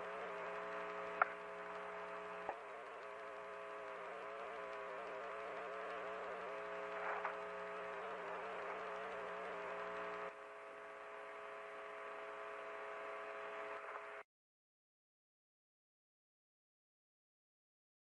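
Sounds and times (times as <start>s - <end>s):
droning hum of held tones: 0.0s - 14.2s.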